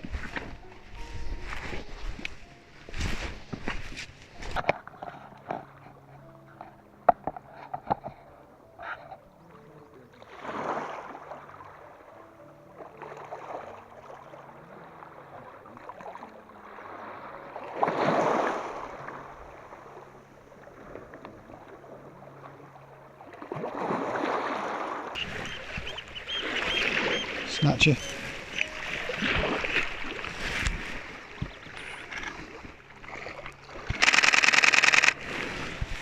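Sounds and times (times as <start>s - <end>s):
sea waves washing onto shore: 23.6s - 36.0s.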